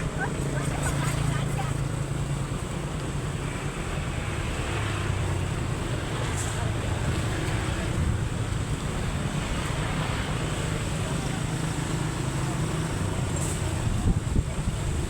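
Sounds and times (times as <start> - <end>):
wind buffeting microphone: 13.6 - 15.0.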